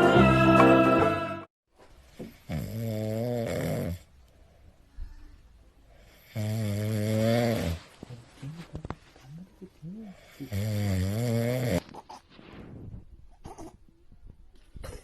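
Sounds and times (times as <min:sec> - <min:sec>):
quiet breaths: 0:01.9 - 0:14.8
person snoring: 0:02.4 - 0:04.0, 0:06.1 - 0:07.8, 0:09.8 - 0:11.8.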